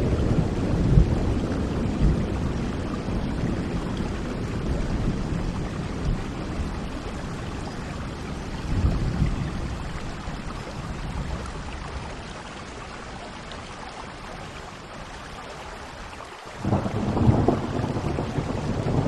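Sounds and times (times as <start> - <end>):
thunder rumble: 0.0 - 10.2, 16.6 - 19.0
steady rain: 0.0 - 19.0.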